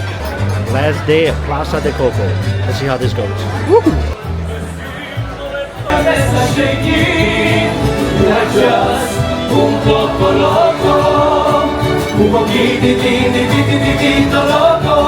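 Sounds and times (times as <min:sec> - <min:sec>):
group of voices singing with music: 0:03.4 - 0:15.0.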